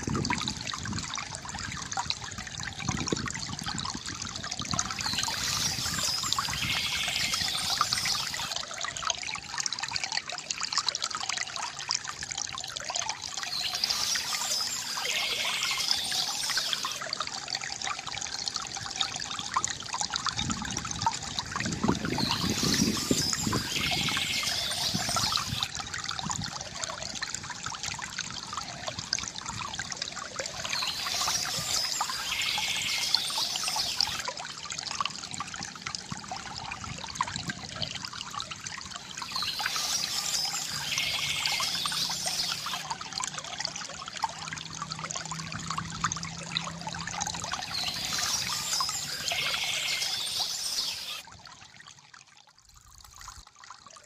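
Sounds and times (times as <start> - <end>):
stream trickling and splashing: 0.0 - 54.0
bird singing: 4.9 - 8.5, 13.4 - 17.0, 22.1 - 25.7, 30.5 - 34.2, 39.1 - 42.8, 47.6 - 51.2.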